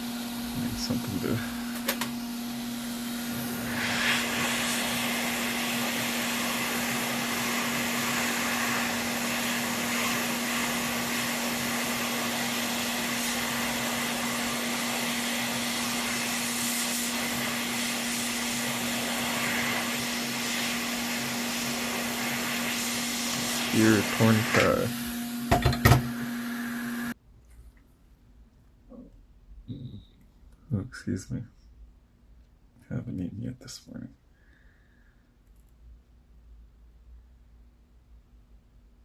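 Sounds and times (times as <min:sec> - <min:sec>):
electric air tool running: 0:00.0 - 0:27.2.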